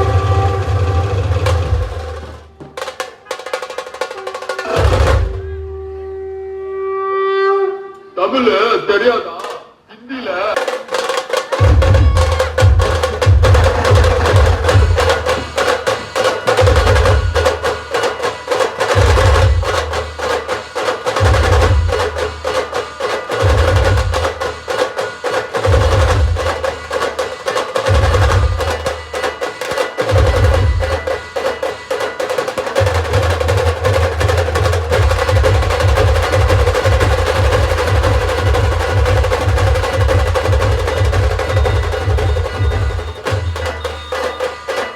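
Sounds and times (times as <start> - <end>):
deep drum beats: 0.0 - 3.3, 10.6 - 18.1, 18.8 - 20.5, 21.1 - 22.8, 23.4 - 24.7, 25.6 - 27.2, 27.8 - 29.3, 30.0 - 31.3, 32.8 - 44.4
fast drumming: 0.0 - 5.6, 9.4 - 9.6, 10.5 - 44.9
held melodic tone: 32.8 - 44.9.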